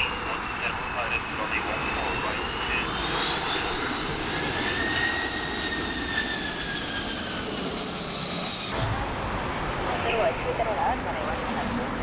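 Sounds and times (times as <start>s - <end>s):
jet engines roaring past: 0.0s - 12.0s.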